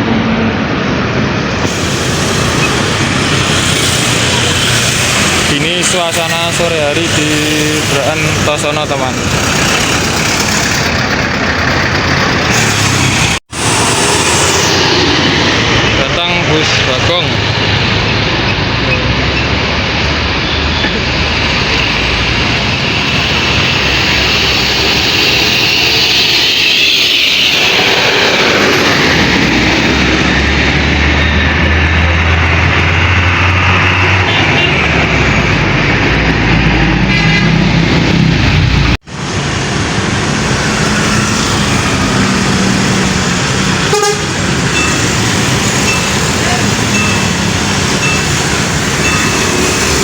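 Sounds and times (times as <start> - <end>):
bus engine running: 0.0 - 50.0
tyres rushing on road: 0.0 - 50.0
bus horns: 25.2 - 28.4, 33.8 - 35.2, 41.1 - 50.0.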